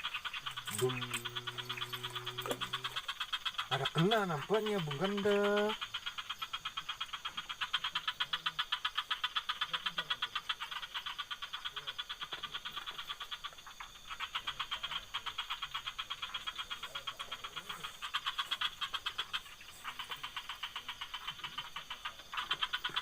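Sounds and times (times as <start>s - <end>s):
faint high insect whine: 0.0s - 23.0s
frogs pulsing calls: 0.0s - 23.0s.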